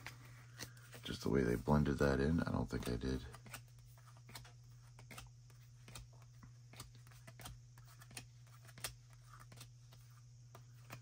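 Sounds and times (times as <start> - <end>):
trading cards clicking and rustling: 2.2 - 11.0.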